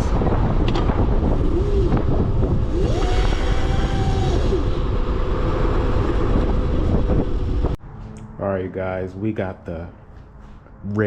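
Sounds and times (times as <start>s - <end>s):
wind buffeting on microphone: 0.0s - 7.8s
electric motor whining: 1.2s - 7.4s.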